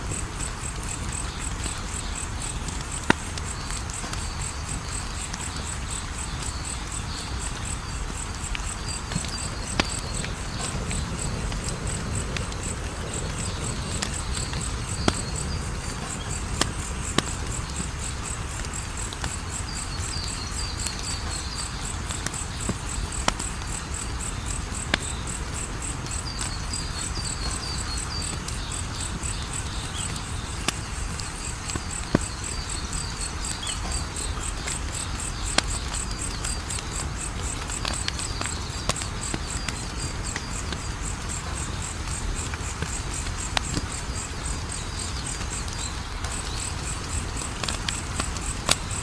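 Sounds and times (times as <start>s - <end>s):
insect chirping: 0.0s - 49.0s
wood fire crackling: 0.0s - 49.0s
fire pops: 0.1s - 49.0s
low rumble: 9.3s - 17.6s.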